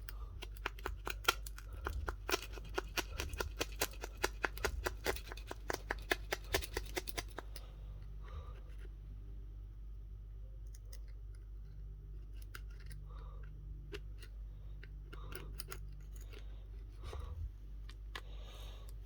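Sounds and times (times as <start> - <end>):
hand tools clicking and scraping: 0.0 - 7.7
steady low hum: 0.0 - 19.0.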